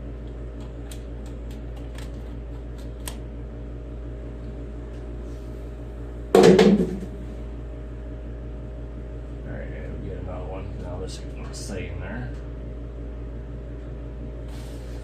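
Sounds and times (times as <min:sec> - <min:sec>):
steady background hum: 0:00.0 - 0:15.0
loud hollow clunk: 0:06.4 - 0:07.2.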